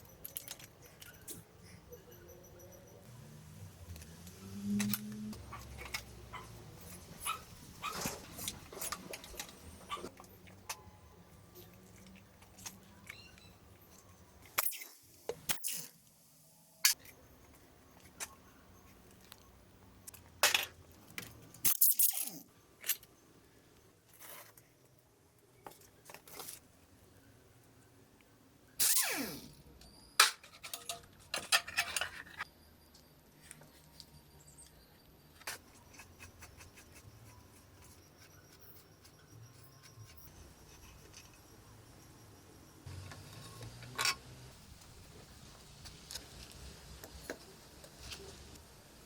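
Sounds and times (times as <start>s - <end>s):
hand tools scraping metal parts: 30.2s - 32.4s.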